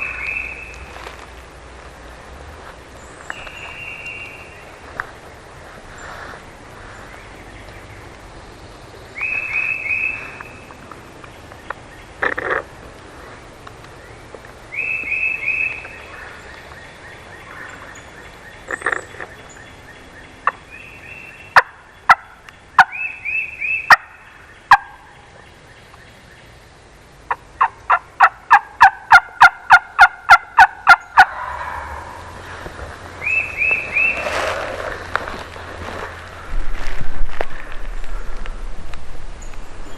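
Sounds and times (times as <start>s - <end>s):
turkey gobbling: 24.7s - 25.0s, 27.3s - 32.6s
turkey yelping: 27.3s - 32.5s.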